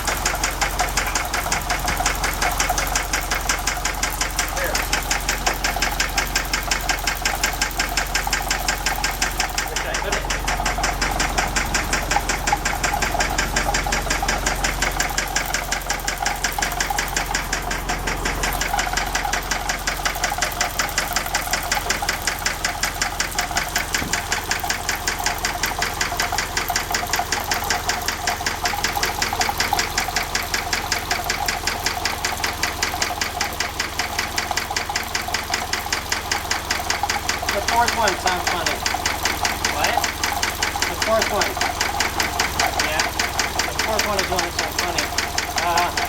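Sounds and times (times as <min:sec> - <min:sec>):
engine idling with rapid knock: 0:00.0 - 0:46.0.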